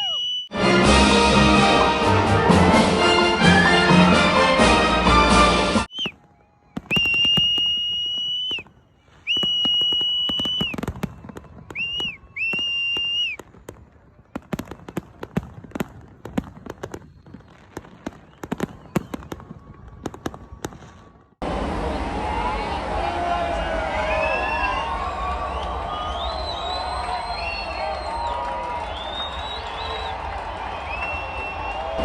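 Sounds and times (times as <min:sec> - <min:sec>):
shrill whistle blasts: 0:00.0 - 0:00.5, 0:05.8 - 0:13.6, 0:16.3 - 0:20.9, 0:23.9 - 0:32.0
fireworks popping and crackling: 0:05.9 - 0:21.4.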